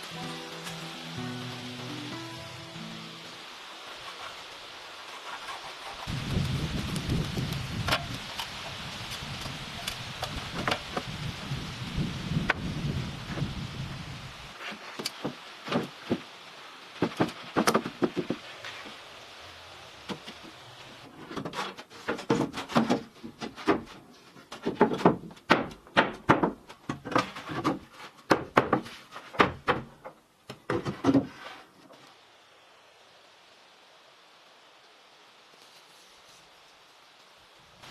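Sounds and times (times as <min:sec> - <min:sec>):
rain hissing: 0:00.0 - 0:22.1, 0:30.2 - 0:37.9
wooden knocks and thumps: 0:17.0 - 0:18.4, 0:21.2 - 0:31.4.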